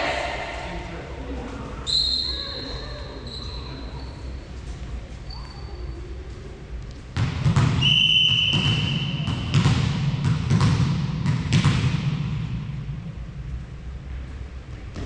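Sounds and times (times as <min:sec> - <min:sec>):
sports hall noise: 0:00.0 - 0:15.0
referee's whistle: 0:01.9 - 0:02.4, 0:07.8 - 0:09.3
volleyball bouncing on floor: 0:07.2 - 0:12.6.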